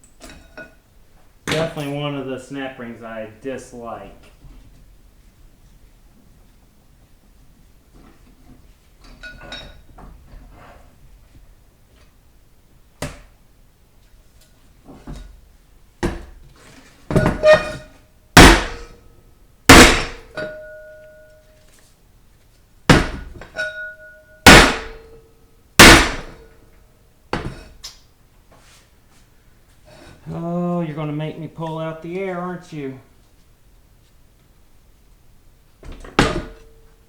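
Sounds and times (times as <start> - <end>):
metal knocks and clanks: 17.1 - 19.0
short metallic ring: 17.2 - 17.9, 20.3 - 21.6, 23.6 - 25.2.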